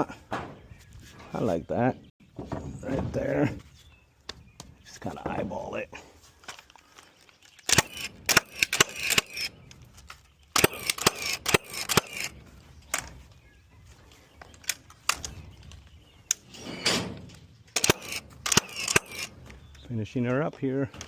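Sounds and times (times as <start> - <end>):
nail gun firing into wood: 7.7 - 9.5, 10.6 - 12.3, 17.8 - 19.4.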